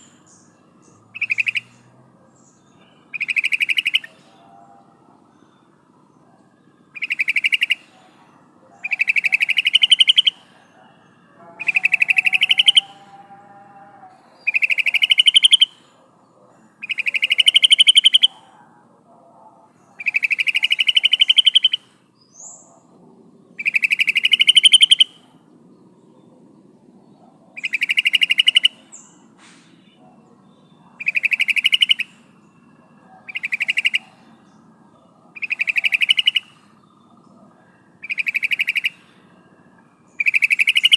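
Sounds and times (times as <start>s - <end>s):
bird chattering trill: 1.1s - 1.8s, 3.1s - 4.3s, 6.9s - 8.0s, 8.8s - 10.5s, 11.4s - 13.2s, 14.4s - 15.8s, 16.8s - 18.5s, 20.0s - 22.7s, 23.6s - 25.3s, 27.5s - 29.1s, 31.0s - 34.6s, 35.3s - 36.7s, 38.0s - 39.0s, 40.1s - 40.9s.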